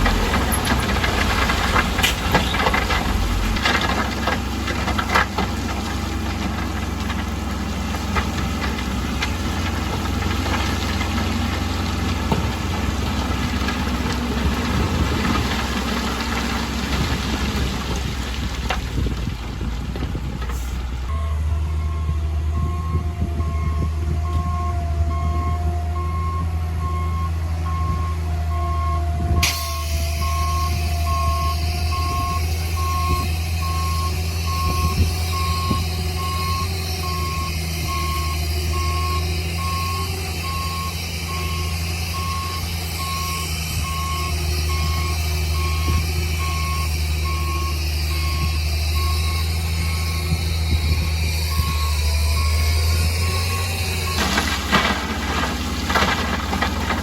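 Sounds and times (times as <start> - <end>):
diesel engine running: 0.0 - 57.0
reversing alarm beeping: 21.1 - 56.6.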